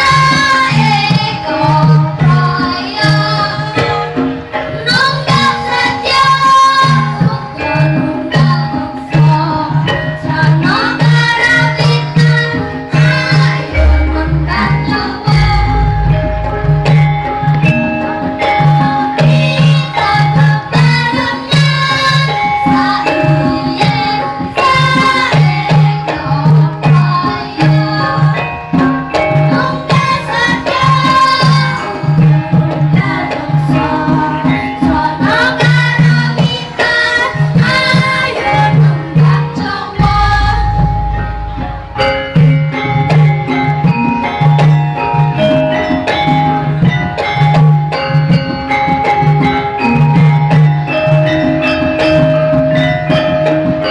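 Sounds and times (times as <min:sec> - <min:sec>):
metallophones ringing: 0:07.6 - 0:53.9
hand drum patterns: 0:08.0 - 0:22.2, 0:32.3 - 0:52.4
gliding melodic line: 0:13.6 - 0:19.4, 0:40.0 - 0:43.7
low strokes: 0:13.7 - 0:18.0.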